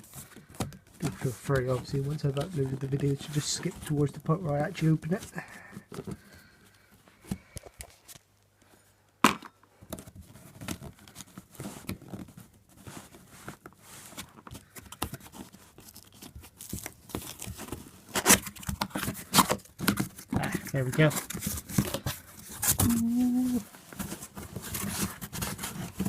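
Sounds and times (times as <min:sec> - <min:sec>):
cardboard box tearing: 0:15.1 - 0:20.3, 0:20.9 - 0:26.0.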